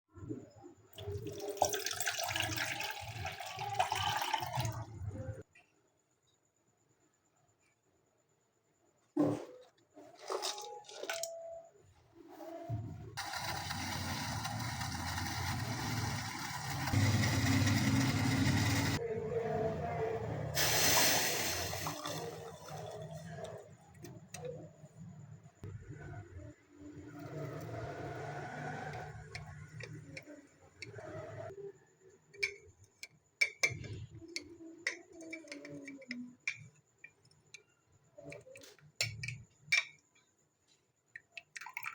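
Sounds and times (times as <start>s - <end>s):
water running: 1.0s - 5.0s, 20.6s - 23.8s
hiss: 20.6s - 22.8s.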